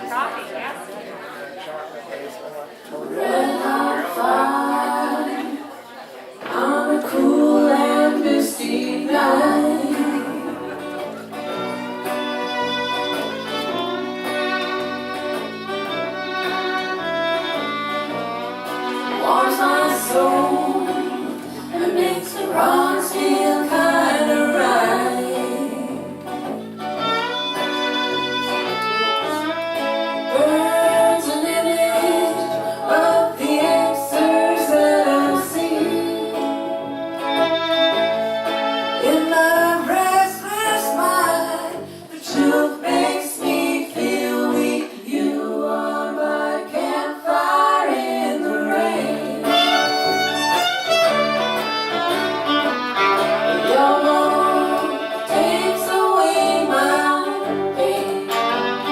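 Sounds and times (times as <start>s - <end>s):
acoustic strings: 2.5s - 58.9s
person singing: 19.0s - 26.5s, 30.2s - 37.9s, 39.0s - 50.2s, 53.4s - 58.9s.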